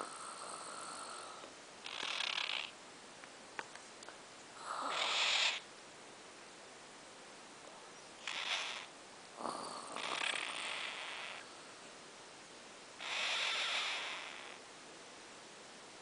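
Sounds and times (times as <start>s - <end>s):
cockatiel raspy hisses: 0.0s - 2.8s, 4.6s - 5.7s, 8.2s - 11.7s, 13.0s - 14.6s.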